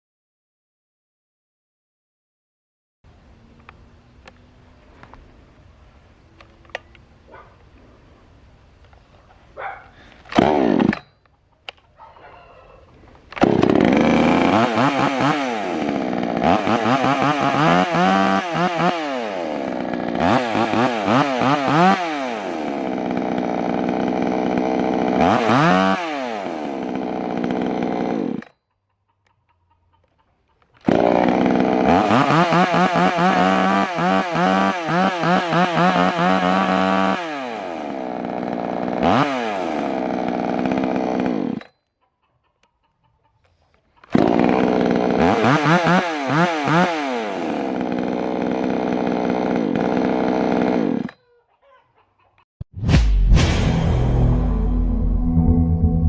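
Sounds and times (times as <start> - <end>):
chainsaw engine revving: 10.3 - 11.1, 13.1 - 28.6, 30.7 - 41.7, 44.0 - 51.2.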